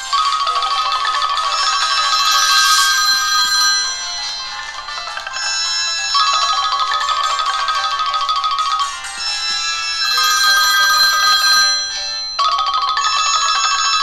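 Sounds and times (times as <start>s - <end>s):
tinkly electronic melody: 0.0s - 14.0s.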